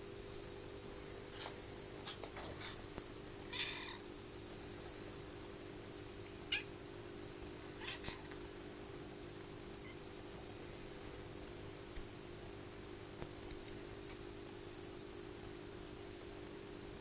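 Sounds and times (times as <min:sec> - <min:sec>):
kittens meowing: 0:03.5 - 0:04.0, 0:06.5 - 0:06.7, 0:07.8 - 0:08.3.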